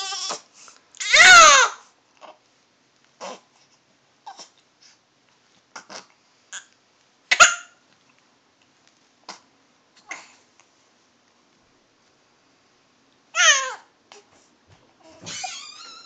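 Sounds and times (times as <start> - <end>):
baby hiccuping: 7.3 - 7.8.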